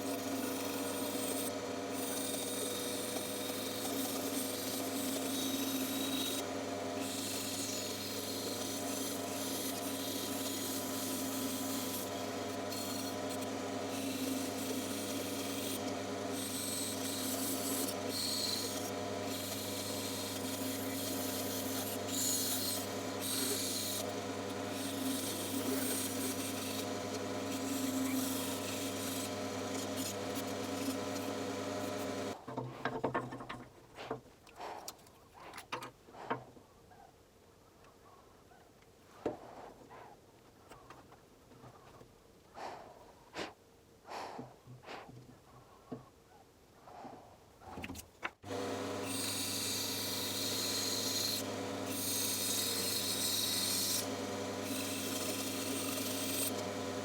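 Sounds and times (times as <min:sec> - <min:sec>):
bandsaw cutting wood: 0:00.0 - 0:32.4, 0:48.4 - 0:57.0.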